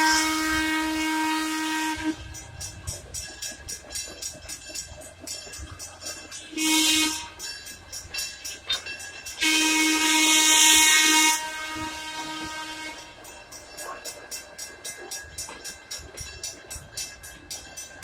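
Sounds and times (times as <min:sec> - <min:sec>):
steam locomotive whistle: 0:00.0 - 0:03.1, 0:06.5 - 0:07.6, 0:09.3 - 0:13.3
train chuffing: 0:00.0 - 0:18.0.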